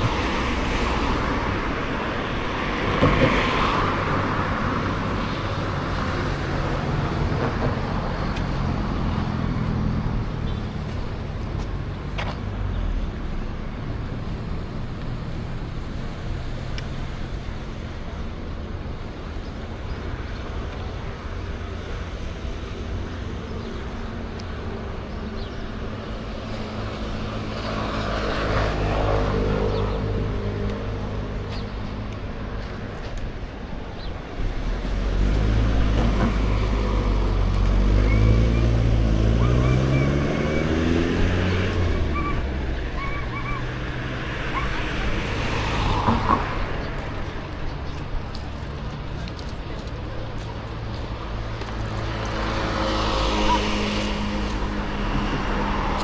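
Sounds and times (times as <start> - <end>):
road traffic hum: 0.0 - 56.0
vehicle passing close: 34.5 - 56.0.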